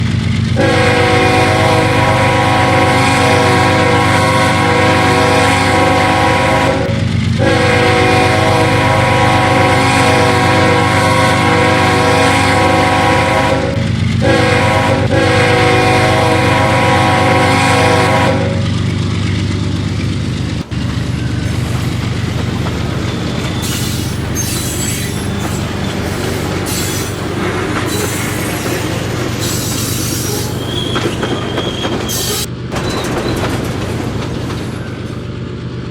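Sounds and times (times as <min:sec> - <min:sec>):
locomotive engine rumbling: 0:00.0 - 0:35.9
locomotive air horn blasts: 0:00.6 - 0:18.8, 0:23.6 - 0:31.1.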